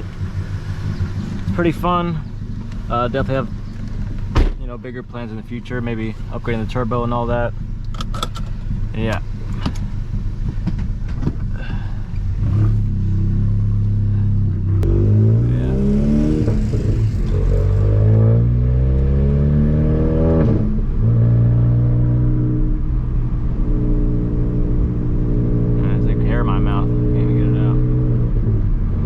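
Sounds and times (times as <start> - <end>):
loud exhaust: 5.1 - 29.0
car engine accelerating through gears: 7.8 - 29.0.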